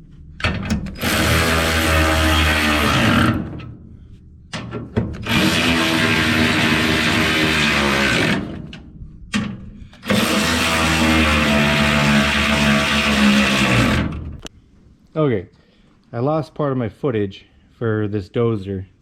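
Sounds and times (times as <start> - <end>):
motor running with low hum: 5.2 - 8.7, 10.0 - 14.5.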